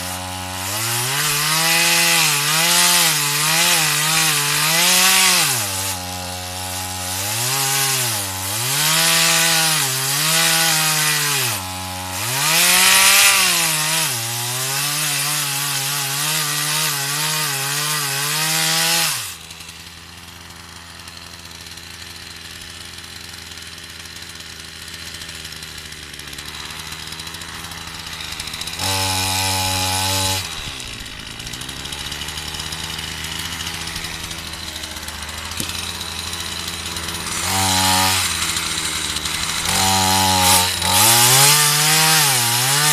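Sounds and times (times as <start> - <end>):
chainsaw cutting wood: 0.0 - 42.9
chainsaw idling: 0.0 - 42.9
chainsaw throttle blip: 18.5 - 42.9.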